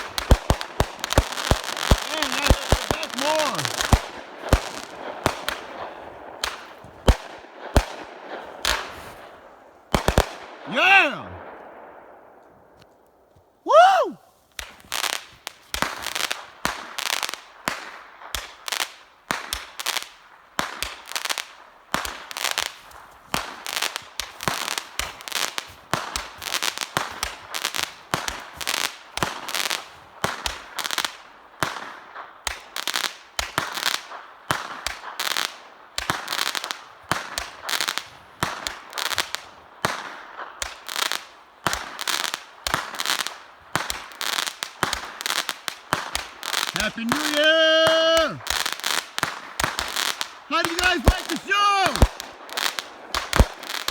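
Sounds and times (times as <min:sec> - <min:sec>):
fireworks crackling: 0:00.0 - 0:11.3, 0:14.4 - 0:31.9, 0:32.5 - 0:53.9
fireworks bangs: 0:00.0 - 0:12.0, 0:41.7 - 0:53.9.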